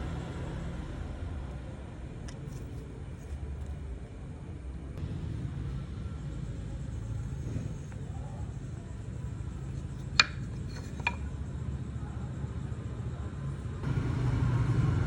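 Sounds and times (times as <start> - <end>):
steady low rumble: 0.0 - 10.6.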